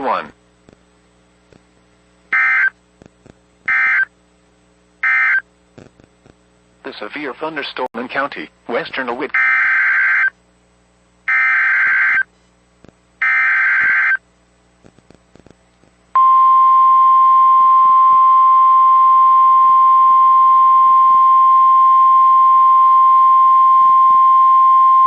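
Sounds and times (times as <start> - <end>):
steady warning alarm tone: 2.4 - 2.7, 3.7 - 4.1, 5.0 - 5.4, 9.4 - 10.3, 11.3 - 12.3, 13.2 - 14.2.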